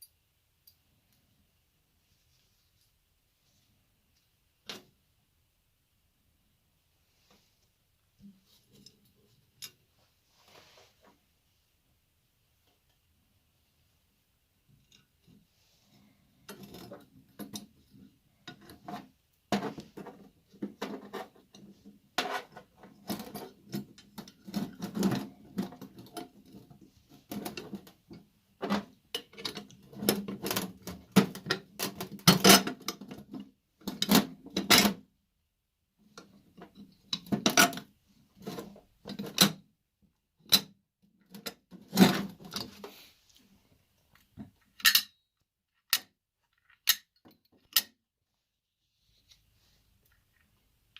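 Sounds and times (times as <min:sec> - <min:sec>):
metal parts clinking and scraping: 0:44.7 - 0:45.2.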